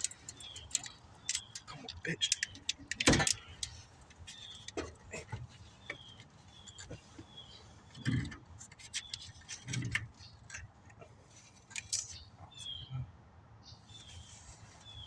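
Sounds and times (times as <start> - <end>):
tools clicking and knocking on metal: 0.0 - 7.3
bird chirping: 0.0 - 10.7, 11.6 - 15.0.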